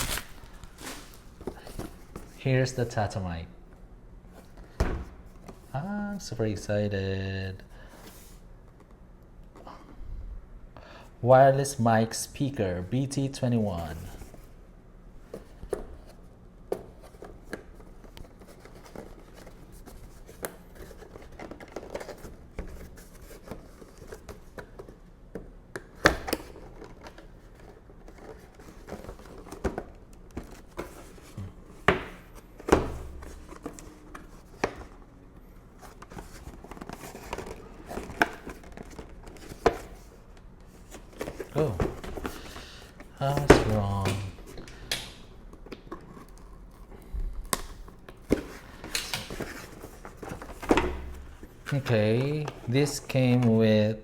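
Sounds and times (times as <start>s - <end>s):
packaging being opened by hand: 0.0s - 2.3s, 35.8s - 53.6s.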